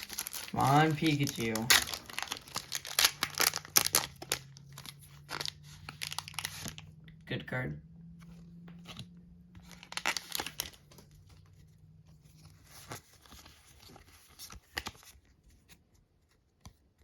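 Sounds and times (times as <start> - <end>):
foil wrapper torn and crinkled: 0.0 - 6.9, 9.6 - 10.8.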